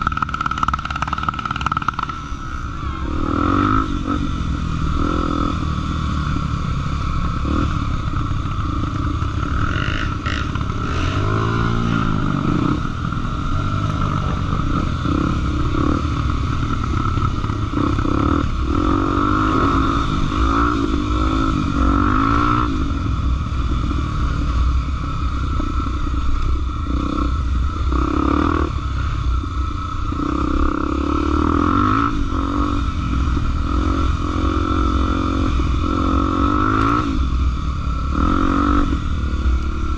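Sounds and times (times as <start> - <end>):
clatter: 0.0 - 2.4
motorcycle engine revving: 0.0 - 39.9.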